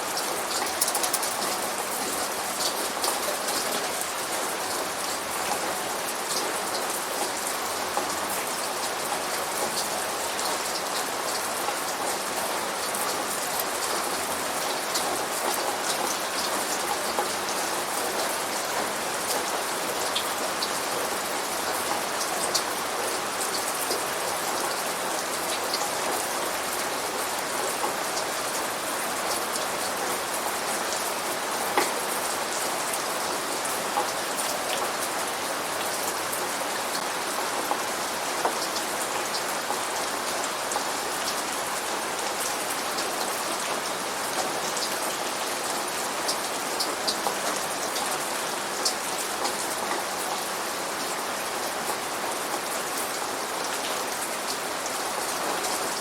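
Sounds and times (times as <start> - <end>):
rain falling: 0.0 - 56.0
raindrops ticking on hard surface: 0.1 - 21.2.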